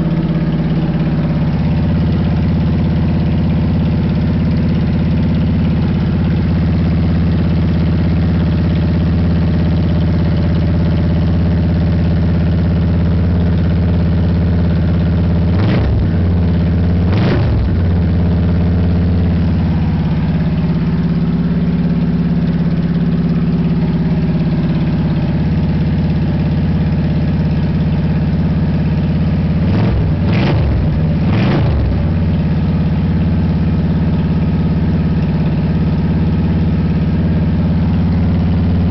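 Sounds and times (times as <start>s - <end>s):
motorcycle engine idling: 0.0s - 38.9s
motorcycle throttle blips: 17.6s - 29.4s.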